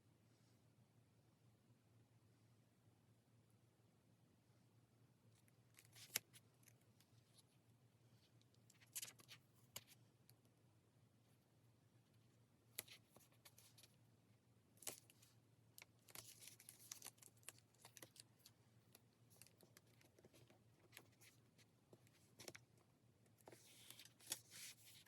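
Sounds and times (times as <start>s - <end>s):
paper rustling: 5.8s - 6.4s, 16.0s - 18.6s, 19.3s - 25.0s.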